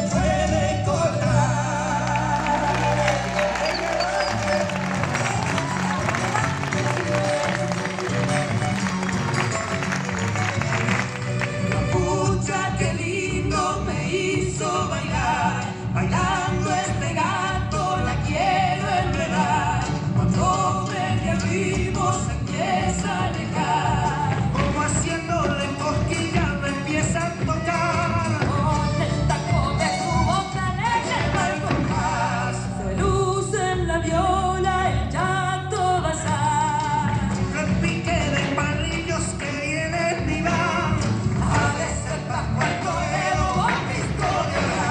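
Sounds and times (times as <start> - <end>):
person singing folk song: 0.0 - 44.9
rhythmic instrumental accompaniment: 1.8 - 13.2.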